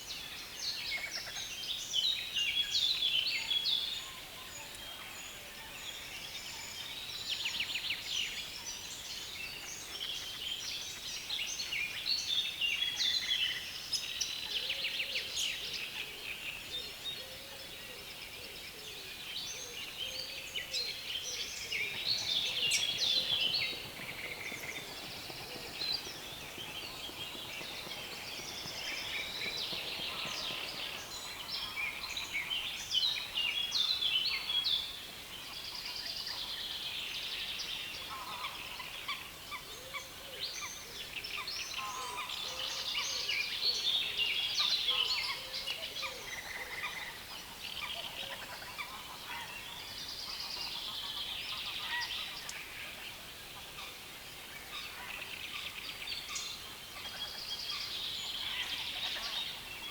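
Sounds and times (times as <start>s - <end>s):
birds chattering song: 18.1s - 59.9s.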